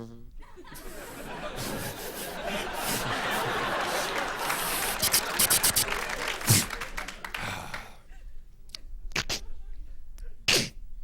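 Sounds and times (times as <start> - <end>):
audience laughing and clapping: 0.4 - 8.4.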